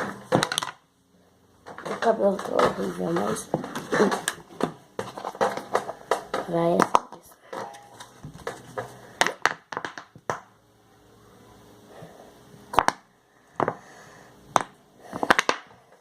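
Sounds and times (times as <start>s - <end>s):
plastic containers clicking on table: 0.3s - 0.8s, 1.6s - 8.6s, 9.2s - 10.4s.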